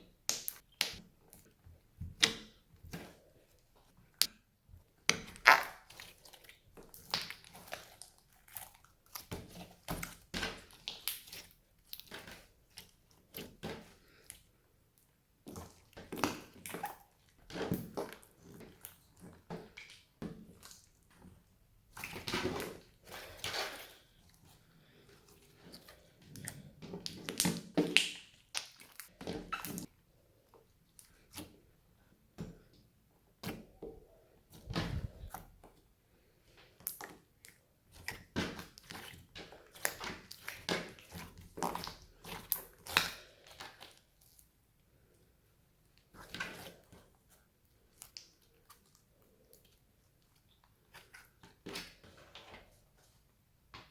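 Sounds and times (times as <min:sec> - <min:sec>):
slime squelching by hand: 0:00.1 - 0:32.4, 0:33.3 - 0:53.4.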